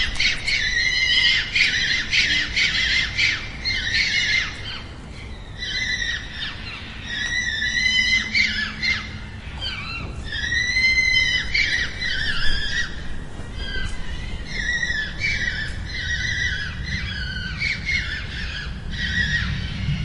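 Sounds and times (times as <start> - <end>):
fox calling: 0.0 - 20.0.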